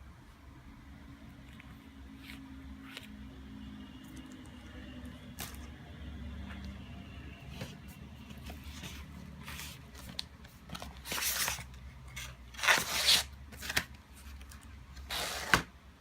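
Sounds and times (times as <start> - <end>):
packaging rustling: 7.6 - 15.7.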